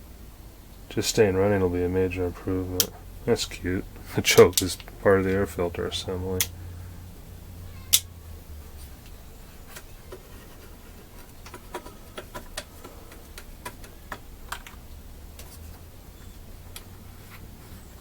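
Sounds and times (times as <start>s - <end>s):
tools clicking and tapping: 11.2s - 15.6s.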